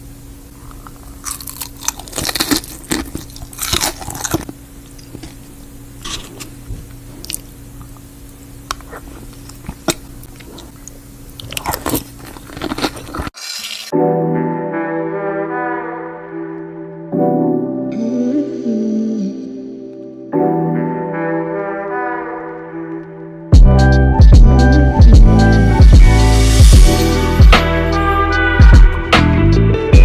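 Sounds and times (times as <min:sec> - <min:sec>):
steady low hum: 0:00.0 - 0:13.3, 0:23.5 - 0:30.0
fried chicken crunching: 0:00.6 - 0:08.0, 0:08.6 - 0:13.9.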